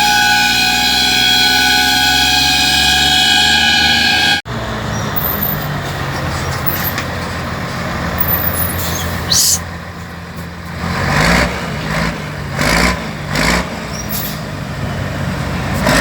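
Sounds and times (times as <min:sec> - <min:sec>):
truck air horns chord: 0:00.0 - 0:04.4
truck engine running: 0:00.0 - 0:16.0.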